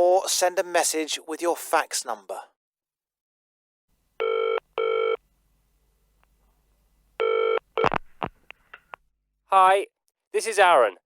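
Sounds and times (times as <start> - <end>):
telephone ringing: 4.2 - 5.2, 7.2 - 7.9.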